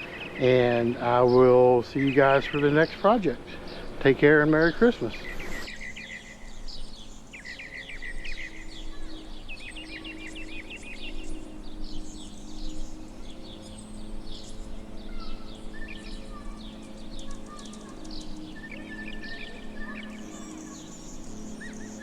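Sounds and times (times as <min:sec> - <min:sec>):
low steady hum: 0:00.0 - 0:07.2
small birds chirping: 0:00.0 - 0:22.0.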